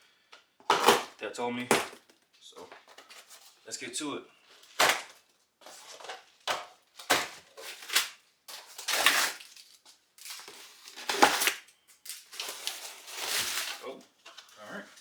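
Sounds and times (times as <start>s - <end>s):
packaging crunching and ripping: 4.6s - 5.2s, 5.8s - 13.9s.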